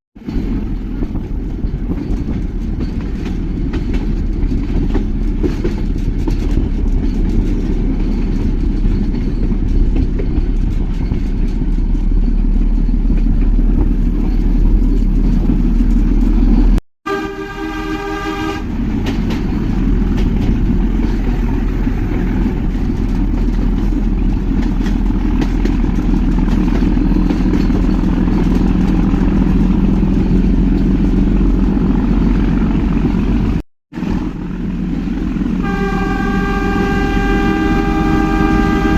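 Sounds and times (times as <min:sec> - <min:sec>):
train rumbling on rails: 0:00.2 - 0:38.9
train horn toot: 0:17.1 - 0:18.9, 0:35.6 - 0:38.9.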